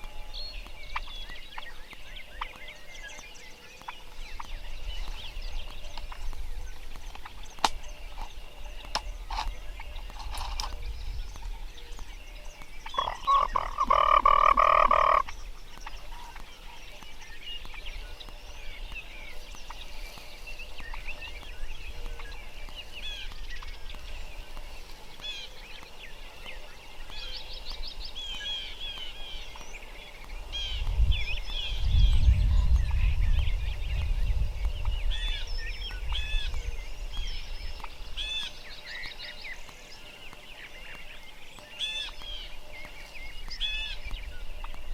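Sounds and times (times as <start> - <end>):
small birds chirping: 0.0 - 44.9
loud rattling animal call: 12.9 - 15.3.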